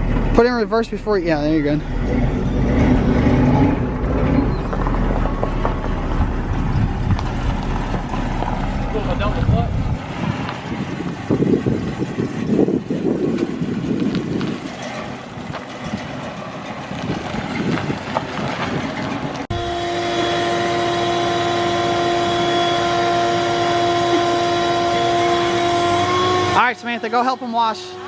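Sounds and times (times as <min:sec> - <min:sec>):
car engine pulling away: 0:00.0 - 0:28.0
machine drone with high tone: 0:19.5 - 0:28.0.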